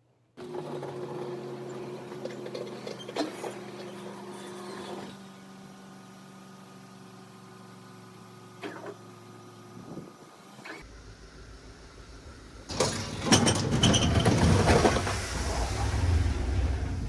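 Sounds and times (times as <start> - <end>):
engine idling: 10.8 - 17.0.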